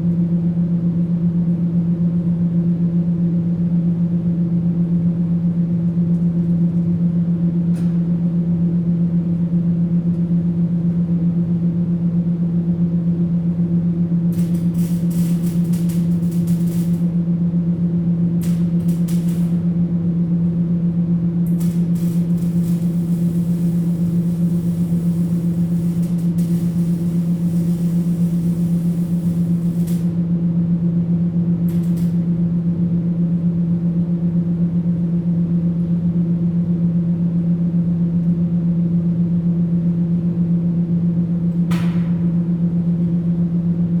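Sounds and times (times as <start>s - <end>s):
welding arc buzz: 14.3s - 17.3s, 18.2s - 19.8s, 21.4s - 30.3s, 31.7s - 32.3s
sizzling hiss: 21.6s - 30.1s.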